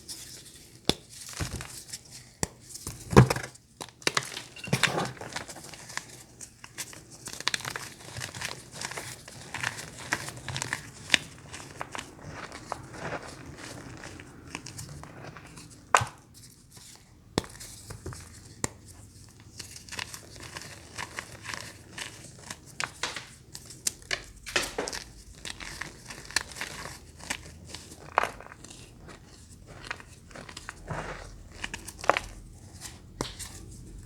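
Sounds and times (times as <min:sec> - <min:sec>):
crinkly packaging crackling: 0:04.1 - 0:16.8, 0:17.5 - 0:34.0.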